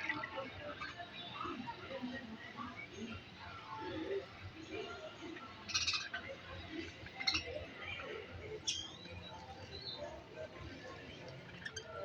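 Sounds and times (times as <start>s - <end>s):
budgerigars chattering: 5.7s - 6.1s.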